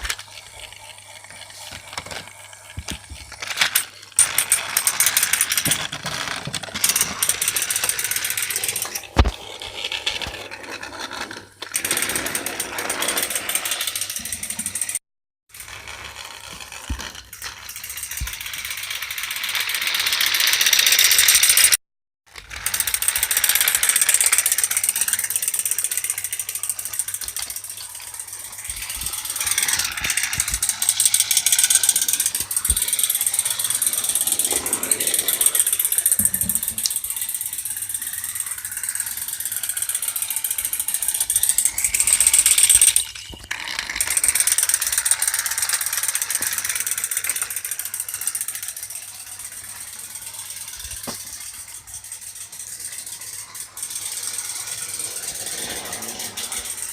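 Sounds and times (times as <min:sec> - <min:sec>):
toy train motor whirring: 0:00.0 - 0:56.9
fast gear clicking: 0:22.5 - 0:56.9.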